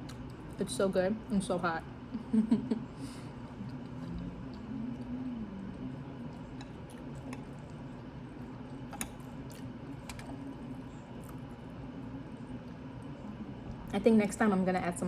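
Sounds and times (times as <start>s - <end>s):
person chewing: 3.4s - 12.8s.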